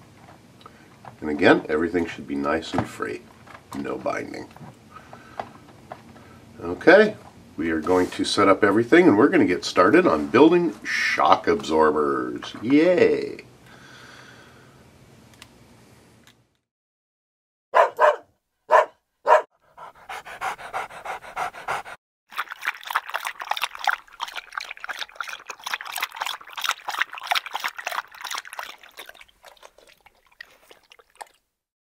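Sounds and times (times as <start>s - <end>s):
dog yipping: 17.8s - 19.5s
dog panting: 19.6s - 22.0s.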